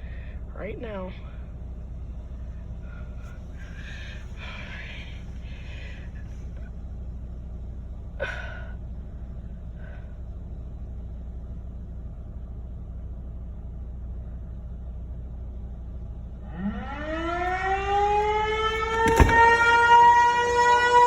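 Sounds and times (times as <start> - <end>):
low rumble inside a car: 0.0 - 21.0
breathy gasp: 2.9 - 6.2.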